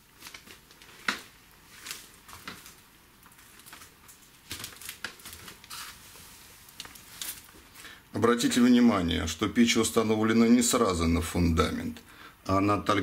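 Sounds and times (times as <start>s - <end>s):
faint clicks and rustles: 0.0s - 8.0s.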